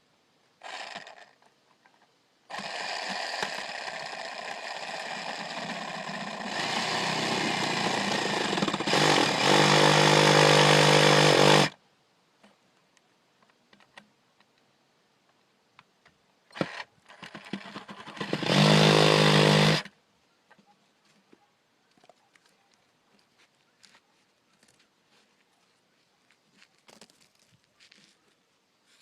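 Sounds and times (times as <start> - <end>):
power tool cutting wood: 2.5 - 11.8, 17.5 - 19.9.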